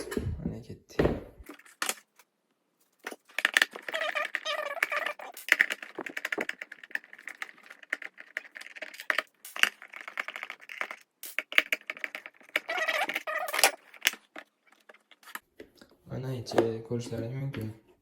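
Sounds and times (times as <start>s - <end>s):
plastic squeak: 3.6s - 6.2s, 12.4s - 15.3s.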